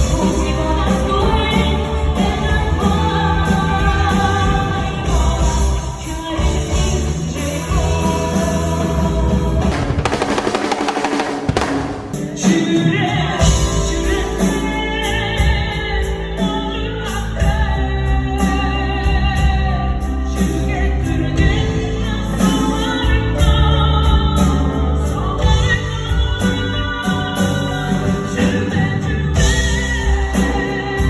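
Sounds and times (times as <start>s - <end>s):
band music with throat singing: 0.0s - 31.0s
loud wash of noise: 9.6s - 12.4s.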